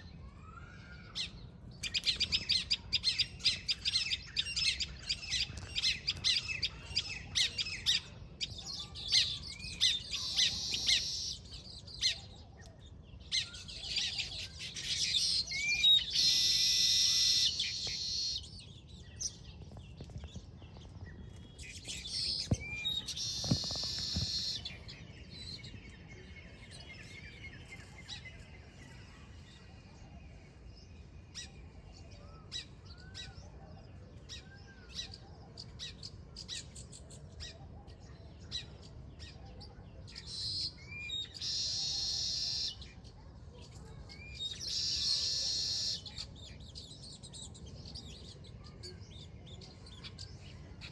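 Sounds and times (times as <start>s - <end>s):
birds chattering and chirping: 0.0s - 50.9s
harsh rasping bird calls: 1.9s - 12.3s, 13.3s - 18.5s, 21.6s - 24.9s.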